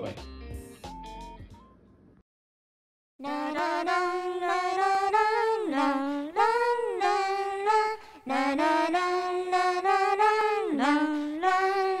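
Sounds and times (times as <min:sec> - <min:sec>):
high voice singing with vibrato: 0:03.2 - 0:12.0.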